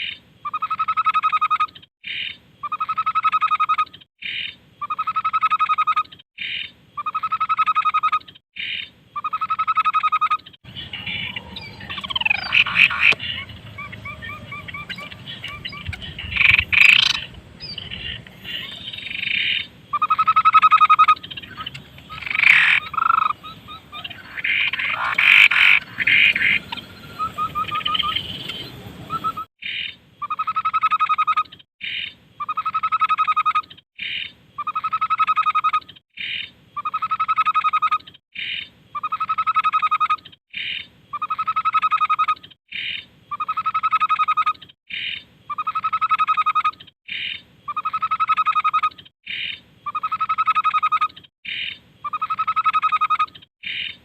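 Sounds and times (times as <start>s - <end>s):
background noise: 0.0s - 54.0s
bird chirps and trills: 0.0s - 54.0s
bird buzzy pulsed call: 10.7s - 29.5s.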